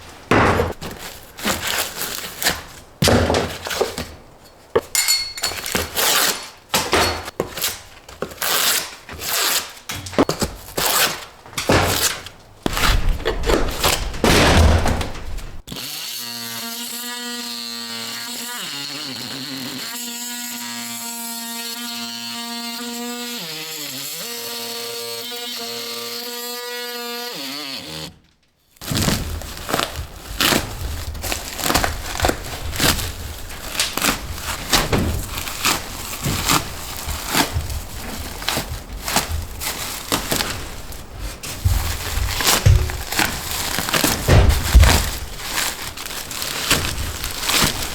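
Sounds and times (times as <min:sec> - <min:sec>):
knocks and clatter of repair work: 0:00.0 - 0:15.7, 0:28.2 - 0:47.9.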